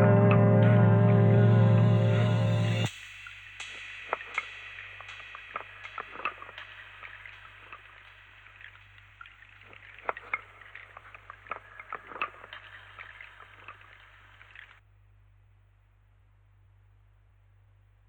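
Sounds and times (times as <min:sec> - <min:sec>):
record surface crackling and clicks: 0:00.0 - 0:14.8
steady hiss: 0:02.1 - 0:14.8.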